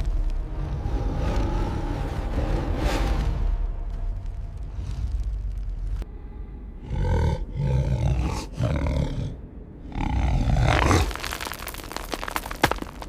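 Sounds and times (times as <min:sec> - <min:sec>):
low rumble: 0:00.0 - 0:13.0
large creature roaring: 0:06.8 - 0:11.3.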